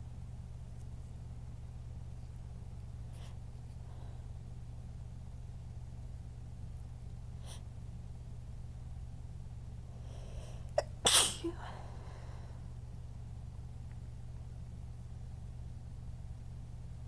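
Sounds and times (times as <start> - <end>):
low background hum: 0.0 - 17.0
sharp intake of breath: 10.0 - 12.6
person sneezing: 10.8 - 11.8.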